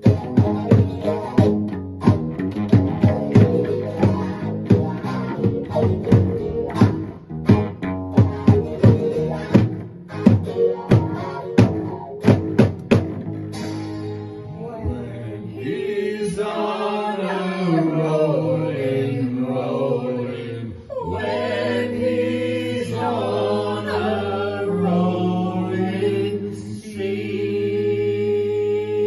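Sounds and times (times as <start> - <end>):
group singing in close harmony: 14.8 - 29.0.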